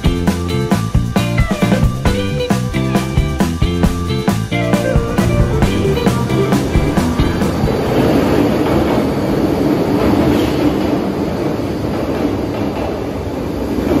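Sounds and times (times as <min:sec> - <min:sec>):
electric train rumbling: 0:01.7 - 0:14.0.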